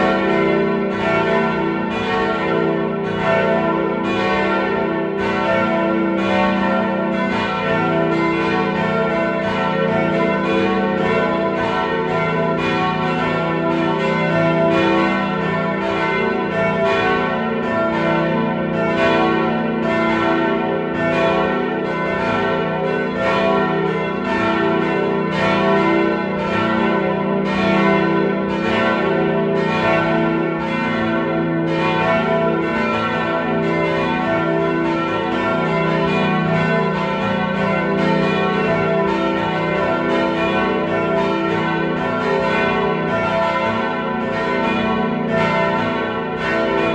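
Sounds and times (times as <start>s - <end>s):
church bells pealing: 0.0s - 46.9s.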